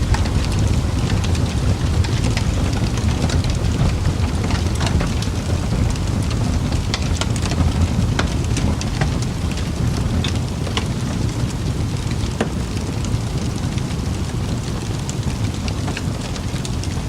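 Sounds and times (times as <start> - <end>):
fire crackling: 0.0 - 17.0.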